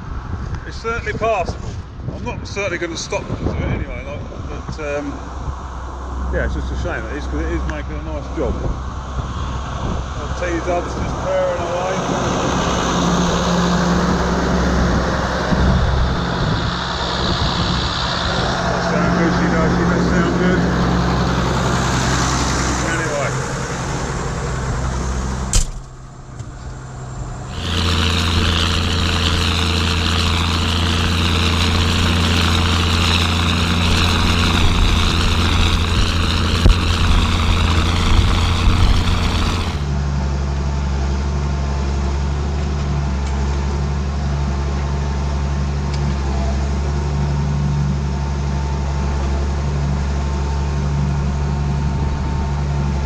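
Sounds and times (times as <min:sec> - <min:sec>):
hiss: 0:27.5 - 0:39.9
tractor diesel engine running: 0:27.5 - 0:39.9.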